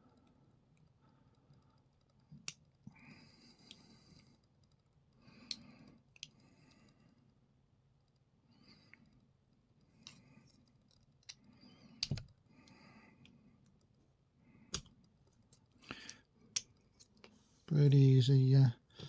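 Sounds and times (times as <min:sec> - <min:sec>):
small metal clicks: 0:08.9 - 0:14.0.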